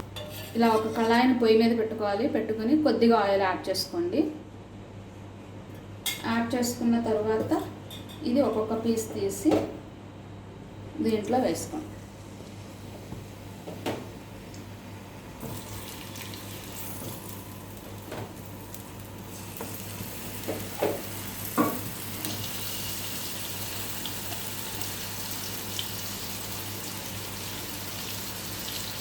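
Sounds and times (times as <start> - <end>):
chicken sizzling in hot oil: 15.5 - 29.0.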